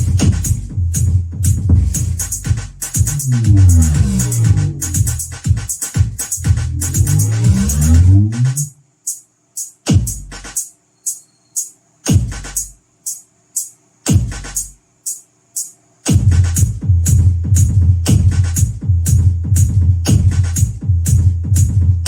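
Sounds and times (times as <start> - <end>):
deep kick drum hits: 0.0 - 8.2, 12.1 - 12.5, 14.1 - 14.6, 16.1 - 22.0
electronic dance music: 0.0 - 18.8
high ticks: 2.2 - 11.8, 12.4 - 13.8, 14.4 - 15.8.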